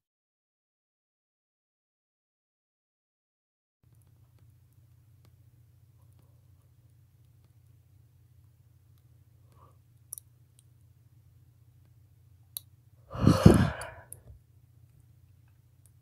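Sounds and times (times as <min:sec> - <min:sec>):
woman yawning: 0:13.1 - 0:14.0.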